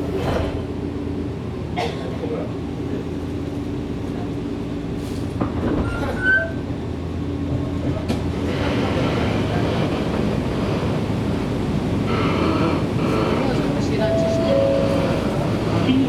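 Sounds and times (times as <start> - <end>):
train motors and wheels humming: 0.0 - 16.0
brief squeal: 5.8 - 6.6.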